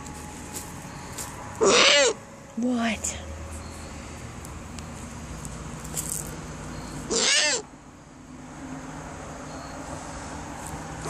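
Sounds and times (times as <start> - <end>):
owl calling: 0.9 - 2.2, 6.7 - 7.7.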